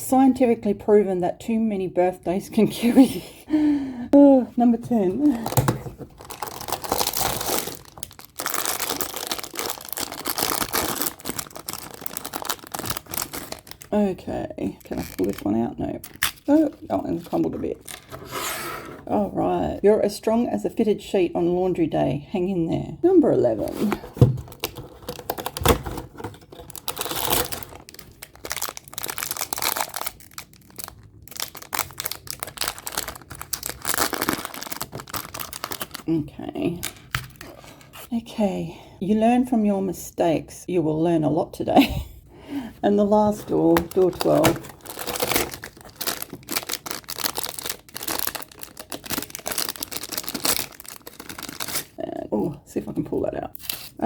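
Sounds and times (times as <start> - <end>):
packaging crinkling and rustling: 5.1 - 14.0, 14.6 - 18.4, 23.7 - 36.1, 36.8 - 38.1, 43.3 - 52.0.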